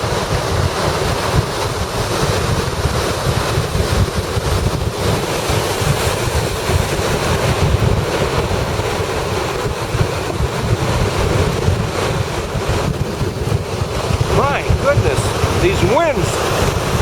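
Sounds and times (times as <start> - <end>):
storm surf rushing: 0.0 - 17.0
wind buffeting microphone: 0.0 - 17.0.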